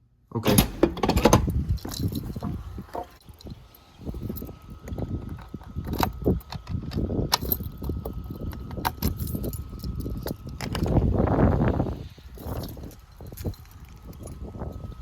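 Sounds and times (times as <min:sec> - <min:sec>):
door lock clicks and knocks: 0:00.3 - 0:03.2
keys jangling: 0:00.4 - 0:11.0, 0:11.8 - 0:15.0.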